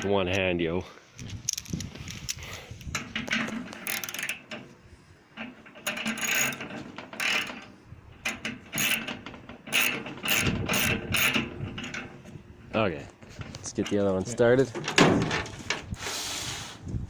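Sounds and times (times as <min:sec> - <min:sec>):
ratchet wrench clicking: 0:03.8 - 0:04.4, 0:08.7 - 0:09.0.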